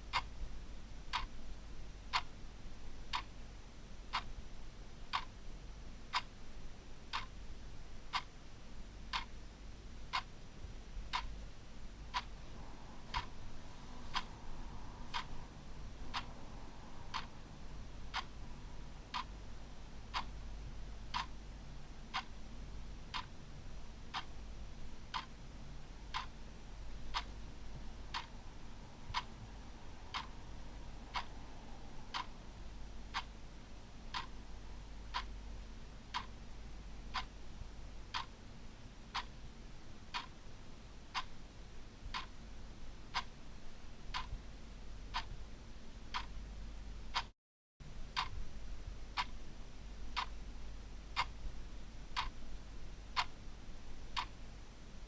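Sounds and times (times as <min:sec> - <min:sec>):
faint low hum: 0:00.0 - 0:47.2, 0:47.8 - 0:55.0
clock ticking: 0:01.1 - 0:01.3, 0:03.1 - 0:03.3, 0:05.1 - 0:05.3, 0:06.1 - 0:06.3, 0:07.1 - 0:07.3, 0:09.1 - 0:09.3, 0:11.1 - 0:11.3, 0:12.1 - 0:18.4, 0:19.0 - 0:20.4, 0:21.1 - 0:21.3, 0:22.1 - 0:22.3, 0:23.1 - 0:23.3, 0:25.1 - 0:25.4, 0:26.1 - 0:27.4, 0:28.1 - 0:29.3, 0:30.0 - 0:31.4, 0:32.1 - 0:32.4, 0:33.1 - 0:33.4, 0:34.1 - 0:36.5, 0:37.1 - 0:37.3, 0:38.1 - 0:38.4, 0:39.1 - 0:39.4, 0:40.1 - 0:40.4, 0:42.1 - 0:42.4, 0:44.1 - 0:44.4, 0:45.1 - 0:45.4, 0:46.1 - 0:46.4, 0:47.1 - 0:47.3, 0:48.2 - 0:48.4, 0:49.1 - 0:49.4, 0:50.1 - 0:50.5, 0:51.2 - 0:51.5, 0:52.2 - 0:52.5, 0:53.1 - 0:53.4, 0:54.1 - 0:54.4.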